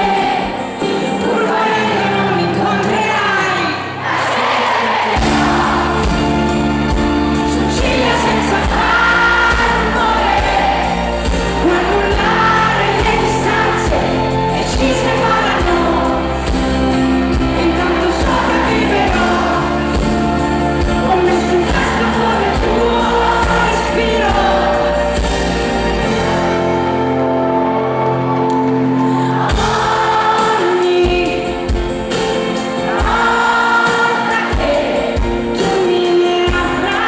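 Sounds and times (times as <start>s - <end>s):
woman singing pop song: 0.0s - 6.3s, 7.4s - 25.5s, 29.5s - 37.0s
band playing: 0.0s - 37.0s
drums keeping steady beat: 5.2s - 26.3s, 29.5s - 37.0s.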